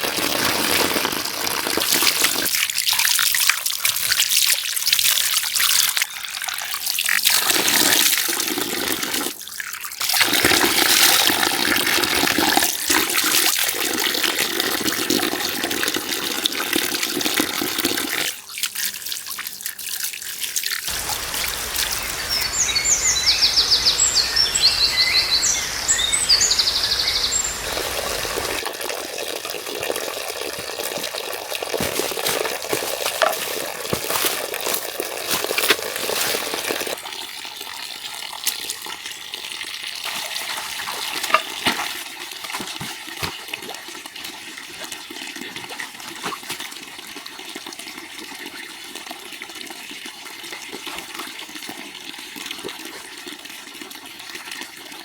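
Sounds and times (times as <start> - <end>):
water running and splashing: 0.0 - 22.6, 27.4 - 54.9
rapid high bird chirps: 21.5 - 28.0.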